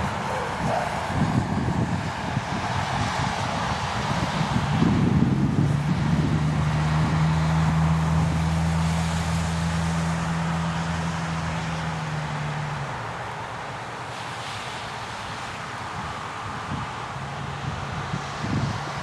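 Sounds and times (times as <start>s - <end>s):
wind on microphone: 0.0s - 8.6s, 16.0s - 19.0s
rain: 0.0s - 19.0s.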